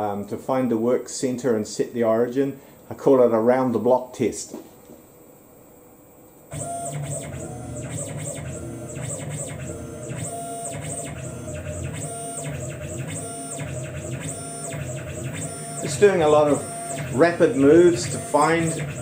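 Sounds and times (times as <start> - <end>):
milling machine motors whining: 6.5 - 19.0.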